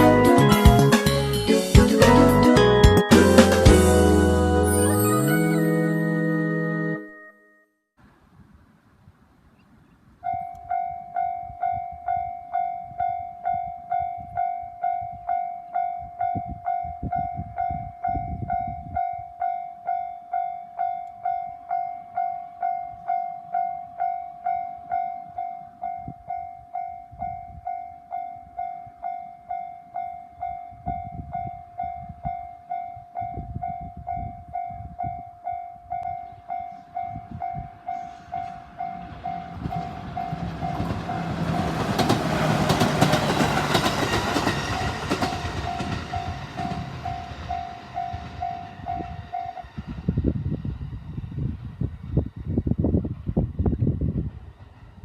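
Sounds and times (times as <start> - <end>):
level crossing warning bell: 10.2 - 42.1, 42.7 - 49.7
train rumble: 36.1 - 55.0.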